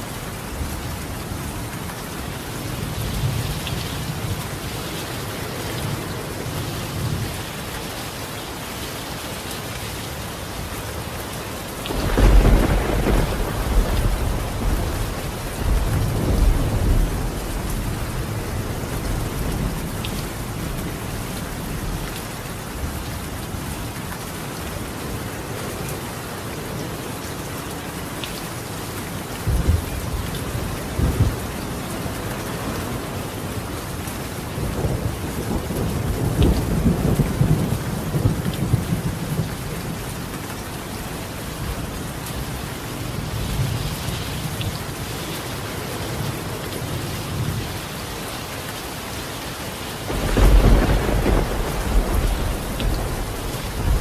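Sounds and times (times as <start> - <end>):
rain on a tiled roof: 0.0 - 54.0
thunder rumbling: 11.9 - 22.0, 50.1 - 54.0.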